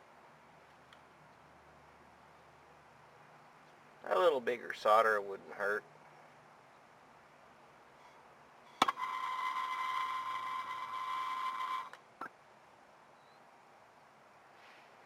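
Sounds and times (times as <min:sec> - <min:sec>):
brief puff: 0:14.5 - 0:15.0.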